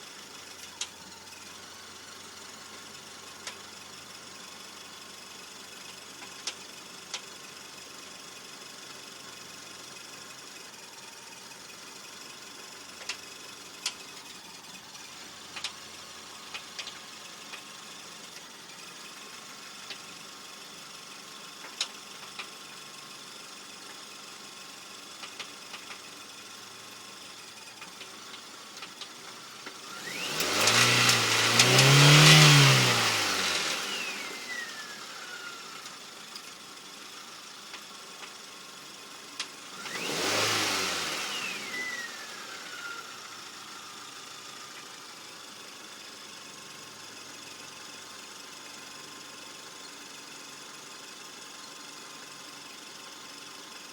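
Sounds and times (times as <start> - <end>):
engine knocking: 0.0 - 30.9
car engine idling and revving: 0.0 - 53.9
falling engine whine: 28.0 - 36.4, 39.6 - 44.8.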